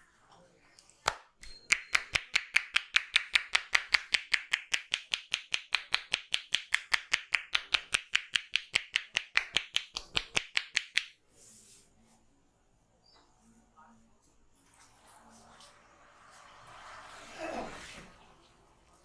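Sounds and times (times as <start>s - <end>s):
hands slapping on a head: 1.0s - 11.2s.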